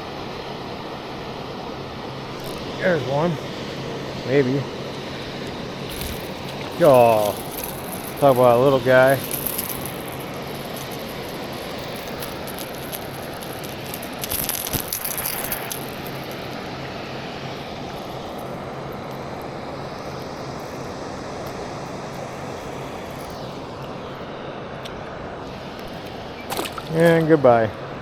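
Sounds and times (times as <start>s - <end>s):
wind: 0.0s - 28.0s
rushing water: 4.2s - 28.0s
handling clicks and rattles: 5.9s - 16.5s, 25.7s - 27.4s.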